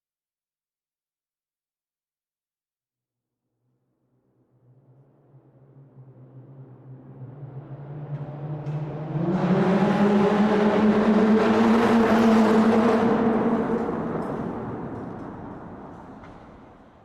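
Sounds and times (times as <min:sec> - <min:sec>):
car engine in tunnel: 0:03.9 - 0:17.0.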